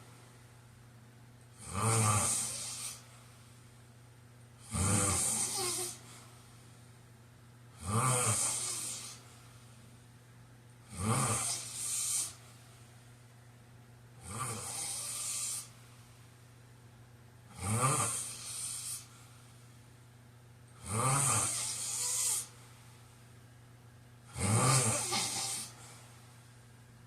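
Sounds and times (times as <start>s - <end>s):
man snoring: 1.6s - 3.0s, 4.6s - 6.0s, 7.8s - 9.2s, 10.9s - 12.4s, 14.2s - 15.7s, 17.5s - 19.1s, 20.8s - 22.5s, 24.3s - 25.9s.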